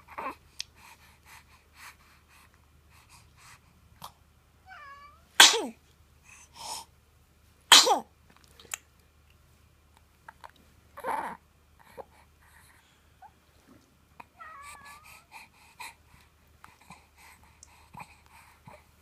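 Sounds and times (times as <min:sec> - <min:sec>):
baby sneezing: 0:05.4 - 0:05.8, 0:07.7 - 0:08.1.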